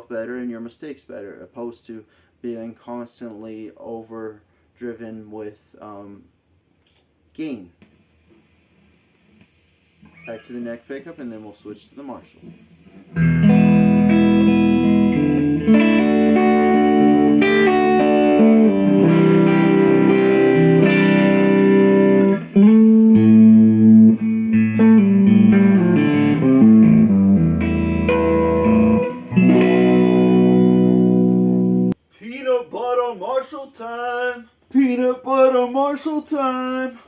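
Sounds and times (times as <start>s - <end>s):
clean electric guitar playing: 12.9s - 32.0s.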